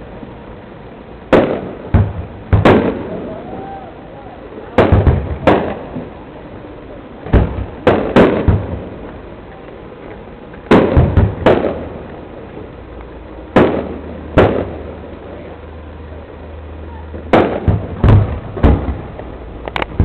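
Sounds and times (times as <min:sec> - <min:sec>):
aerial fireworks bangs: 0:01.3 - 0:03.8, 0:04.6 - 0:06.2, 0:07.2 - 0:09.1, 0:10.6 - 0:12.7, 0:13.5 - 0:15.5, 0:17.2 - 0:20.0.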